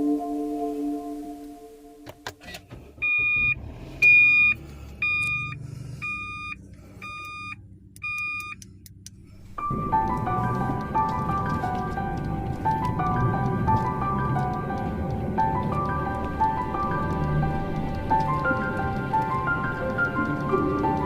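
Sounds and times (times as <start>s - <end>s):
background music: 0.0s - 2.2s, 9.2s - 21.0s
vehicle engine rumble: 2.1s - 21.0s
vehicle warning beeps: 3.0s - 8.6s.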